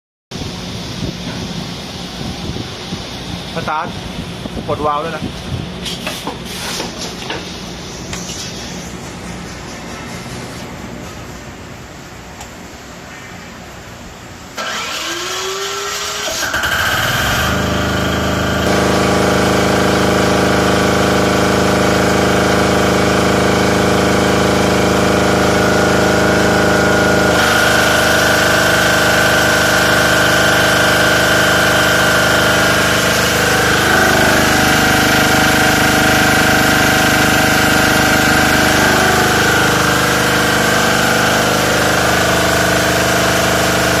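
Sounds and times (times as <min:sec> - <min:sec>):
diesel generator engine running: 0:14.0 - 0:44.0.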